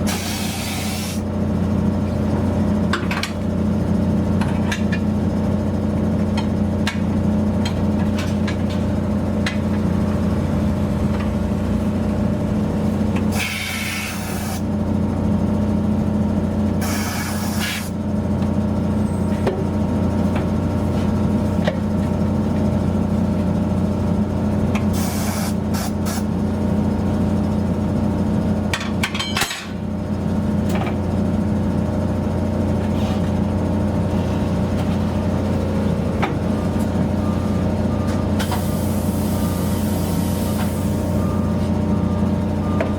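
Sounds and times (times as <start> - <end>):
compressed air hiss: 0.1 - 1.2, 13.3 - 14.7, 16.8 - 17.9, 25.0 - 26.2, 38.5 - 41.0
electric machine hum: 29.9 - 38.0.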